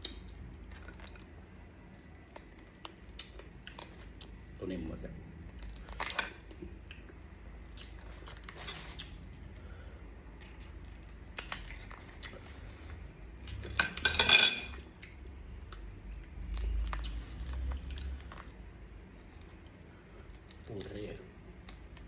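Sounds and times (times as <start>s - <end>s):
crab shells and dishes clinking: 13.7s - 14.8s
dishes clattering: 13.8s - 14.8s.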